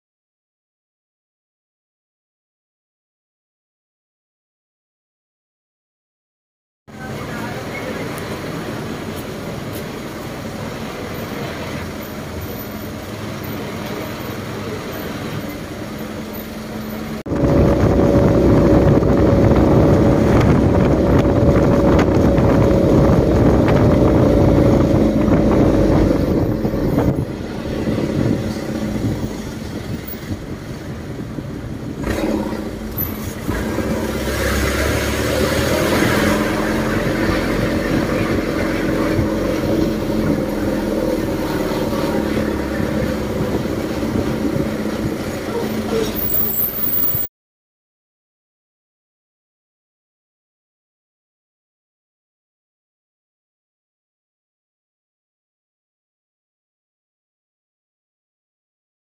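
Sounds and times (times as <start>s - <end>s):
heavy vehicle engine running: 6.9s - 47.3s.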